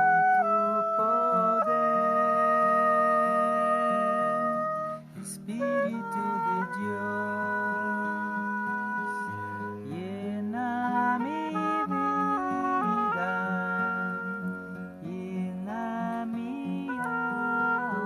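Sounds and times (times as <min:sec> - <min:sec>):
classical guitar playing: 0:00.0 - 0:18.0
oboe sustained notes: 0:00.0 - 0:18.0.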